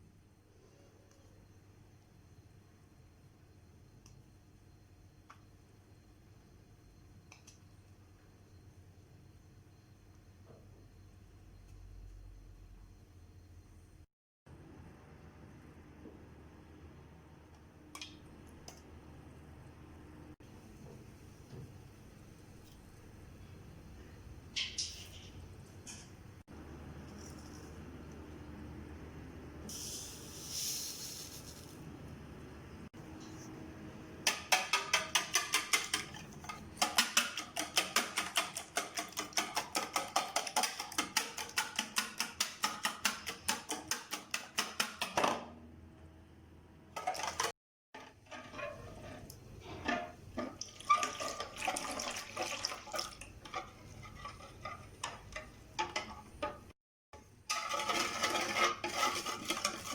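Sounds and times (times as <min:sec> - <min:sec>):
utensil striking bowl rapidly: 0:34.2 - 0:45.2.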